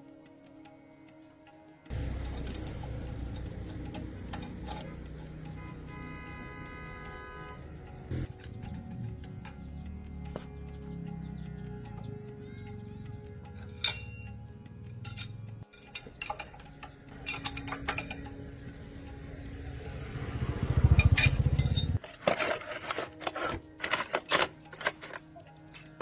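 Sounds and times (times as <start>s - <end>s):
metal tools clinking: 2.0s - 5.6s, 13.4s - 14.4s, 15.0s - 18.6s, 21.0s - 26.0s.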